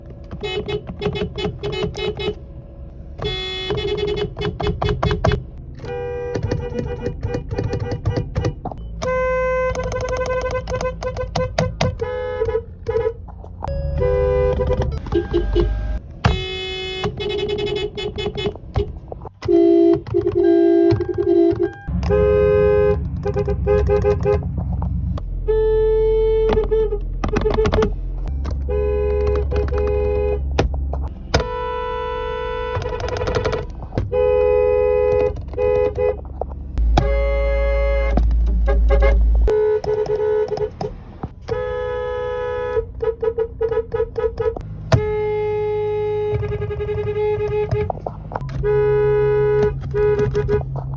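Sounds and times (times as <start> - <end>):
low traffic rumble: 0.0 - 50.9
car horns honking: 0.1 - 2.5, 3.1 - 50.9.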